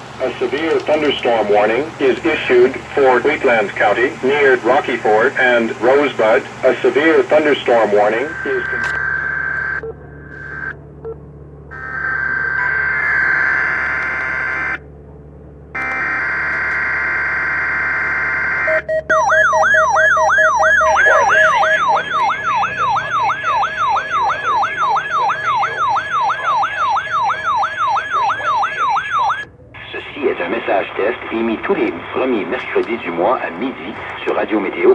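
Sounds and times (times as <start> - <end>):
steady high alert tone: 0.2 - 9.8, 19.1 - 29.5
electronic alarm tone sweeping: 11.7 - 14.8, 15.8 - 29.5.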